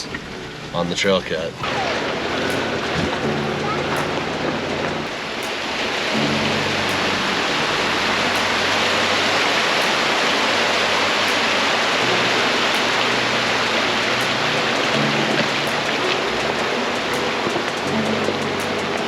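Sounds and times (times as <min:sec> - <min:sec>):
creek rushing: 0:00.0 - 0:19.0.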